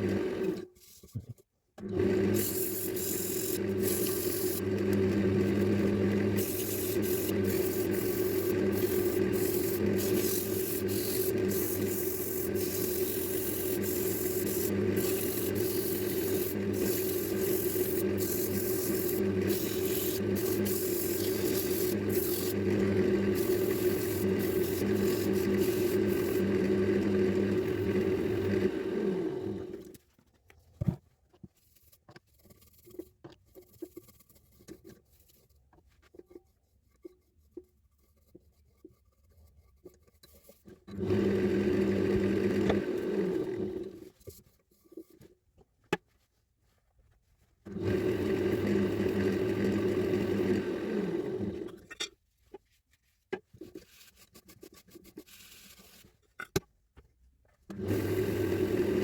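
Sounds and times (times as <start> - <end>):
wood lathe running: 0.0 - 0.6, 1.8 - 30.0, 40.9 - 44.0, 47.7 - 51.8, 57.7 - 59.0
abrasive rubbing spinning wood: 2.3 - 28.7.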